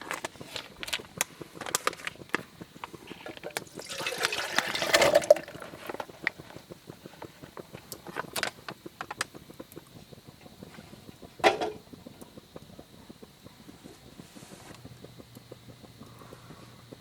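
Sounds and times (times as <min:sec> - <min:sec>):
small crackles and ticks: 0:00.0 - 0:04.7, 0:05.4 - 0:17.0
liquid pouring into container: 0:02.9 - 0:06.3.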